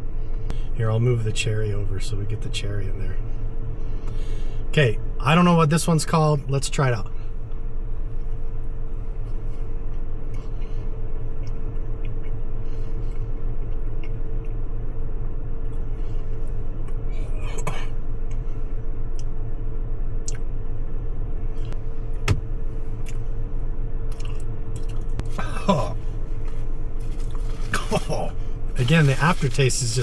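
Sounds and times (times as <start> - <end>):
low hum: 0.0 - 30.0
clicks and mouth sounds: 13.1 - 14.6, 20.2 - 20.5, 24.1 - 25.3.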